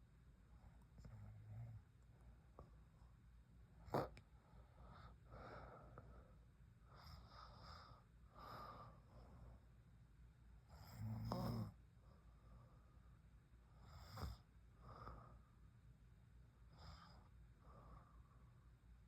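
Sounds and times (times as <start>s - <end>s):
woman snoring softly: 10.7s - 11.8s.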